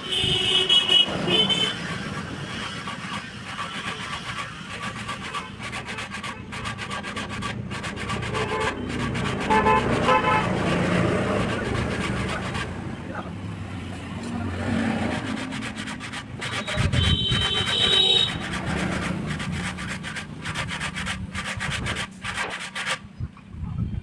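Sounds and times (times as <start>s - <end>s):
sanding strokes on wood: 0.2s - 12.9s, 14.2s - 23.0s.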